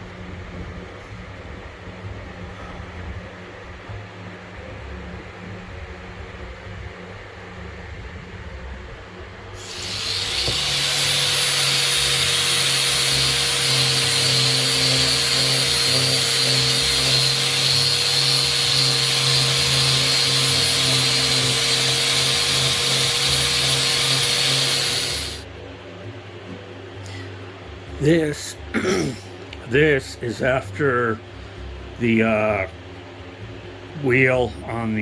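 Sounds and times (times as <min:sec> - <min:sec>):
angle grinder running: 0:09.6 - 0:25.4.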